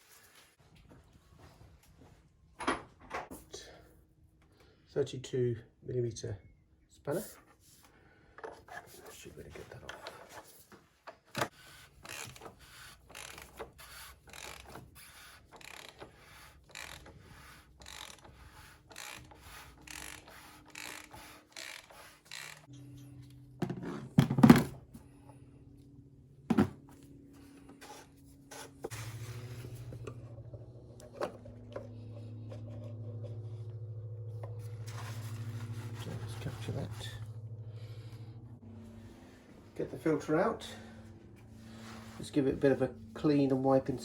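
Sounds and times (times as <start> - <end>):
wrench clicking and scraping: 12.0 - 14.8, 15.6 - 22.7
steady low hum: 22.2 - 44.0.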